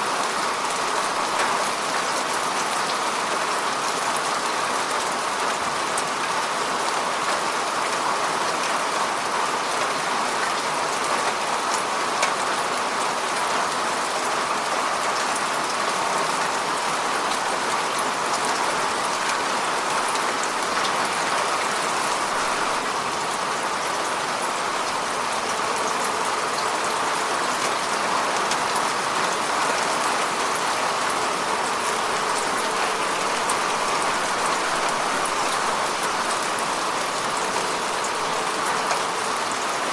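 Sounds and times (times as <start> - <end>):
rain falling on a lake: 0.0 - 39.9.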